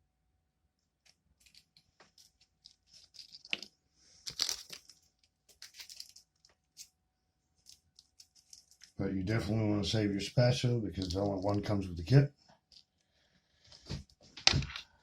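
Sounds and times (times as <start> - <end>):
packaging rustling and crinkling: 1.4 - 6.9
plastic parts clicking: 11.0 - 11.6.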